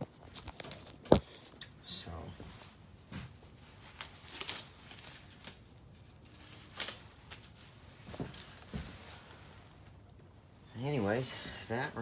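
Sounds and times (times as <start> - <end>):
rustles and plastic clicks: 0.0 - 1.7, 3.6 - 9.0.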